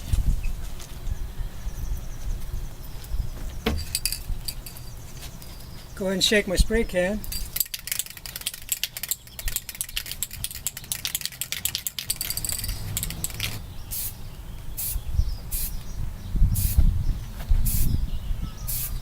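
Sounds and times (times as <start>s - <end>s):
spray can ball rattling: 7.3s - 14.2s, 14.8s - 15.8s, 16.6s - 16.8s, 17.7s - 17.9s, 18.7s - 19.0s
spray paint hissing: 7.7s - 15.8s, 16.5s - 16.9s, 17.6s - 18.0s, 18.6s - 19.0s.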